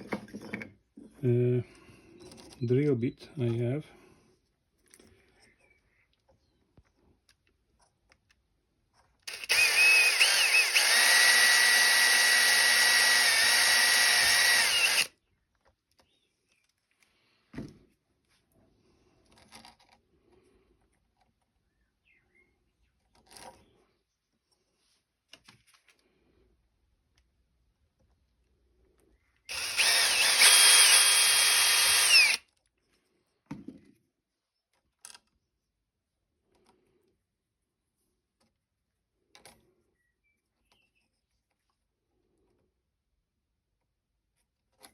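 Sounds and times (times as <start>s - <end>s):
electric drill whining: 9.3s - 15.1s, 29.5s - 32.4s.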